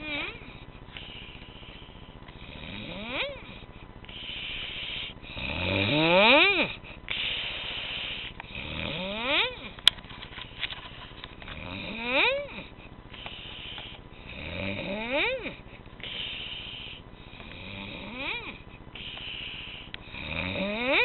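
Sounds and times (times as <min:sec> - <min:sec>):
squeaky snoring: 0:00.0 - 0:01.2, 0:02.4 - 0:09.8, 0:11.6 - 0:12.7, 0:13.5 - 0:21.0.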